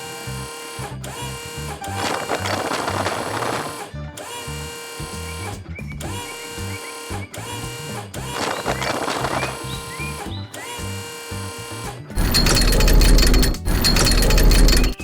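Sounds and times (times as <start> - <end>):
cartoon music with bouncy bass: 0.0 - 15.0
rattling noise burst: 12.2 - 15.0.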